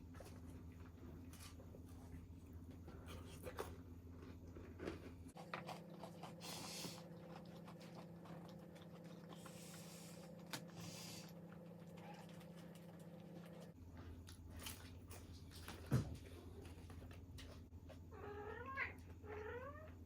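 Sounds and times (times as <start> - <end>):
steady low hum: 0.0 - 20.0
person chewing food: 2.9 - 13.6.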